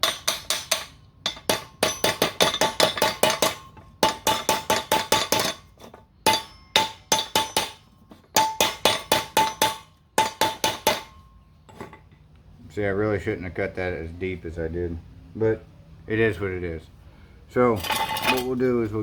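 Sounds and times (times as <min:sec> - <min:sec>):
hammer tapping steel pipe: 0:00.0 - 0:11.3.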